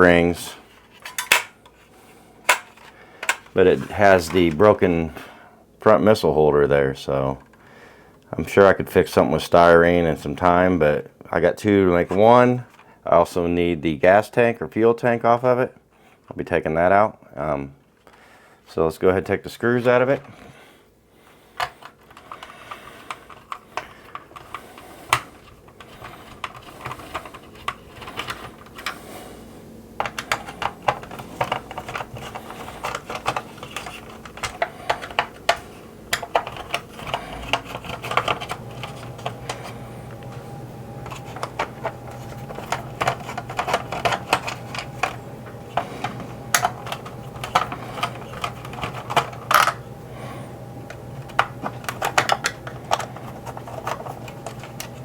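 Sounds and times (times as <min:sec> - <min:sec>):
steady low hum: 0:00.0 - 0:55.0
screwdriver and plastic clicks: 0:30.0 - 0:39.8, 0:41.0 - 0:45.2, 0:50.9 - 0:55.0.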